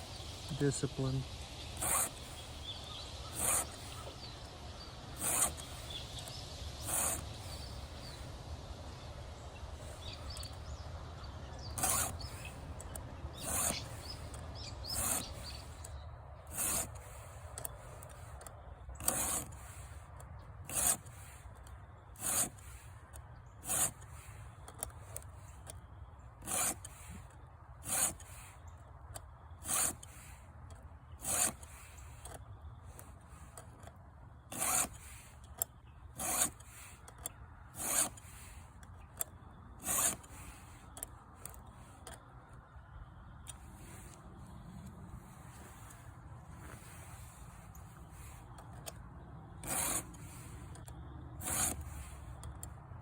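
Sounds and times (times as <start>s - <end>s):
file rasping on chain teeth: 0.6s - 4.4s, 5.1s - 8.3s, 11.6s - 20.0s, 20.7s - 23.0s, 23.6s - 25.7s, 26.4s - 28.7s, 29.6s - 30.4s, 31.2s - 33.8s, 34.5s - 42.2s, 49.6s - 52.7s.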